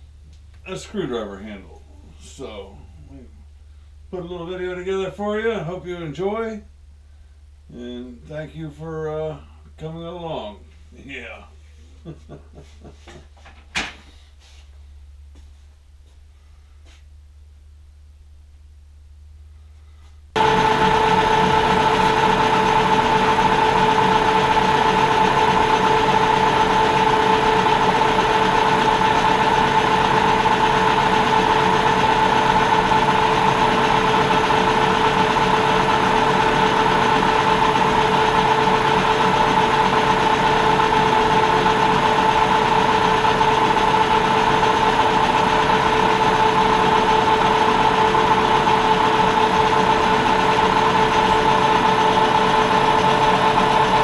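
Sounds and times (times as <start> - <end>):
metal lathe running: 20.4 - 54.0.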